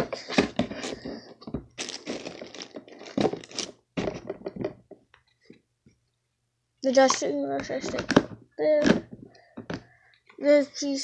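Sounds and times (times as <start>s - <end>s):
plastic parts knocking and cracking: 0.0s - 5.2s, 7.0s - 9.9s.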